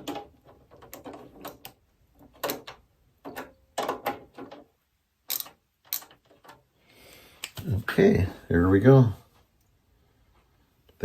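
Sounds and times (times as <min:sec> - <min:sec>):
screwdriver and metal parts clicking: 0:00.0 - 0:06.6.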